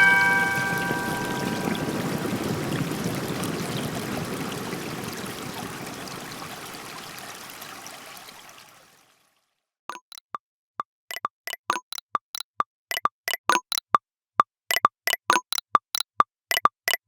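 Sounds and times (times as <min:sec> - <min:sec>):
running water ringtone: 0:00.0 - 0:07.2, 0:09.9 - 0:10.2.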